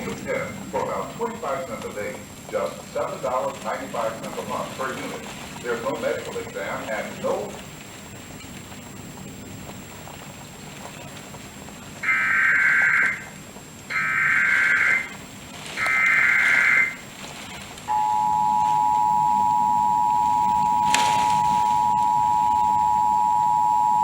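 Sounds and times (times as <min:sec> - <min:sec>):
screeching digital data bursts: 0:12.0 - 0:13.3, 0:13.9 - 0:15.2, 0:15.8 - 0:17.0
two-tone attention signal: 0:17.9 - 0:24.0.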